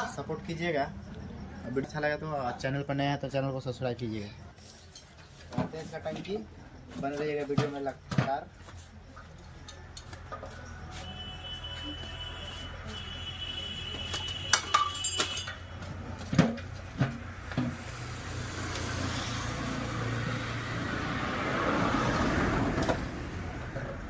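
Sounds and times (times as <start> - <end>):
metallic knocks and clinks: 14.5 - 17.2.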